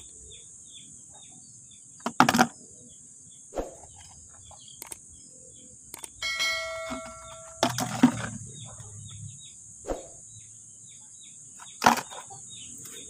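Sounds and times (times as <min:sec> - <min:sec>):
insects droning: 0:00.0 - 0:13.0
sharp knocks: 0:06.2 - 0:08.4.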